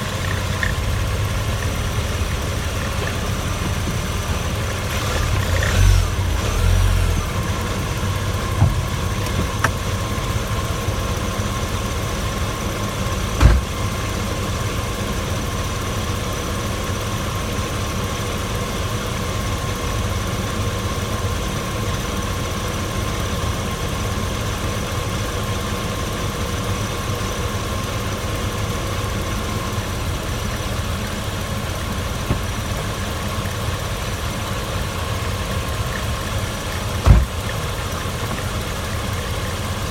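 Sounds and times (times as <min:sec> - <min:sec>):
car engine running: 0:00.0 - 0:39.9
dull low thumps: 0:08.1 - 0:09.9.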